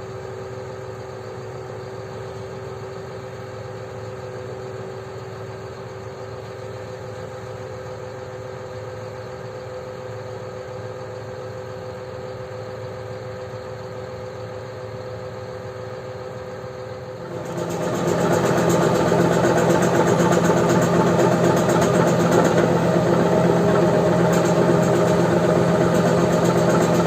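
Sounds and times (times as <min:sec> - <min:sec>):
heavy machine engine running: 0:10.9 - 0:27.0.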